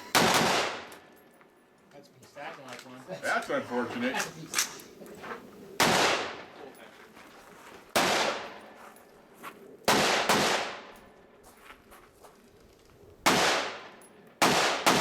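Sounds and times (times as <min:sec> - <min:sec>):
rifle shots with ringing echo: 0:00.0 - 0:01.2, 0:05.8 - 0:06.6, 0:07.9 - 0:08.8, 0:09.9 - 0:11.1, 0:13.2 - 0:15.0.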